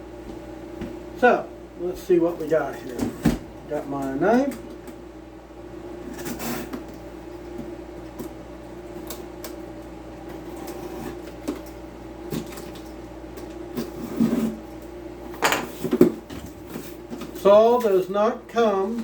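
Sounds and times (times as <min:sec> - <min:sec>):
cardboard scrapes and knocks: 0:13.8 - 0:14.6.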